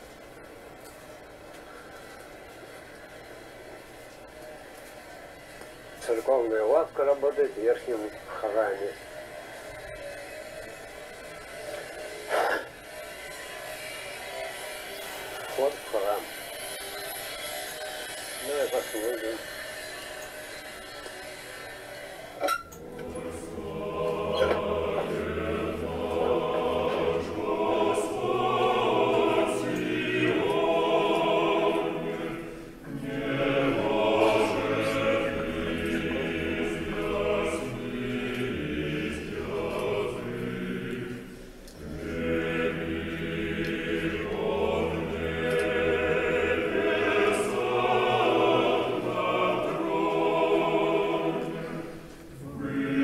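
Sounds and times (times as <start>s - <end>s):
church choir singing: 22.2s - 53.0s.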